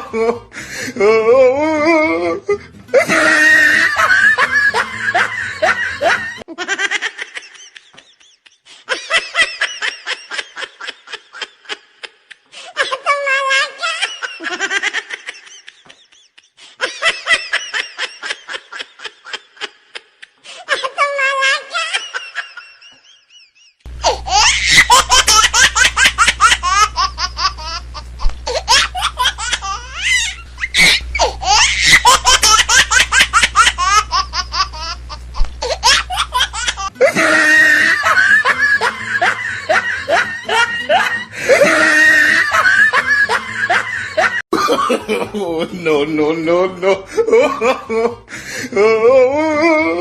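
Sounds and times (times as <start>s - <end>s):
people laughing hard: 0.0s - 0.9s, 2.5s - 50.0s
low steady hum: 23.9s - 42.8s.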